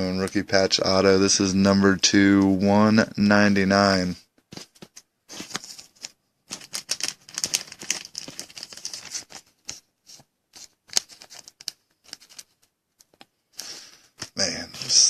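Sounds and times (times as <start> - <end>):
plastic sleeve crinkling: 4.5 - 14.4.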